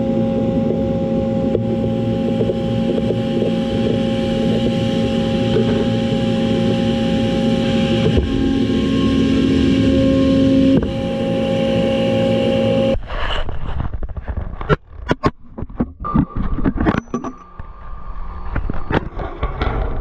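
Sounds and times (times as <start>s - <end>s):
machine tool motor hum: 0.0s - 13.0s
metal cutting noise: 0.0s - 13.0s.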